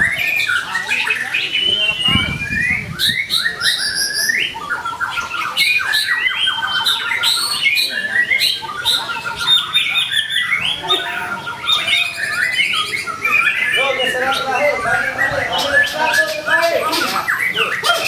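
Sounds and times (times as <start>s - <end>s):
bird singing varied phrases: 0.0s - 18.0s.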